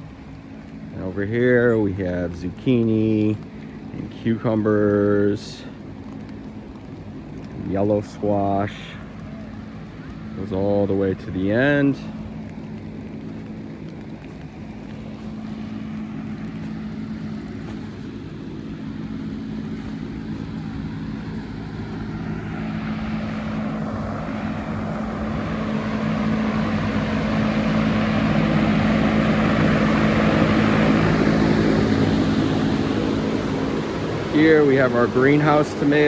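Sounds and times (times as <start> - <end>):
ventilation fans humming: 0.0 - 36.0
rush of moving air: 11.3 - 36.0.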